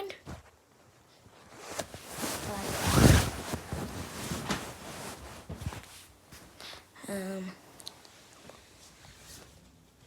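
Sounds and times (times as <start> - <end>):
handling knocks and rustles: 1.6 - 6.6
microphone handling rush of air: 1.9 - 5.8.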